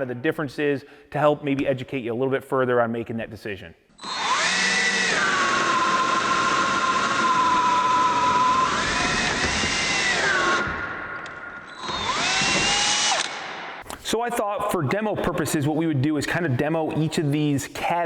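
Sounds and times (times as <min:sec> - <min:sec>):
cordless drill motor whine: 0:04.0 - 0:13.8.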